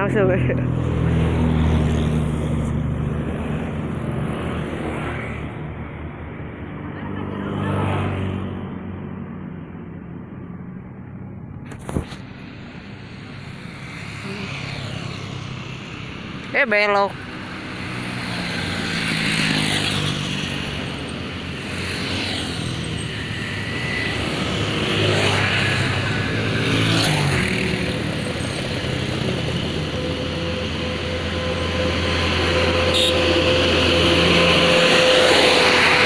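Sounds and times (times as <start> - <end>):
vehicles passing close by: 0.0 - 36.0
heavy engine humming: 9.8 - 36.0.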